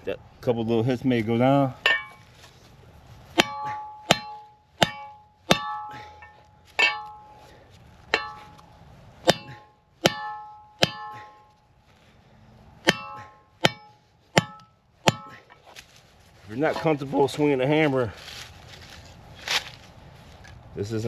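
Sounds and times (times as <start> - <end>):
hammer striking metal: 1.8 - 2.3, 3.4 - 7.5, 8.1 - 11.6, 12.8 - 15.6.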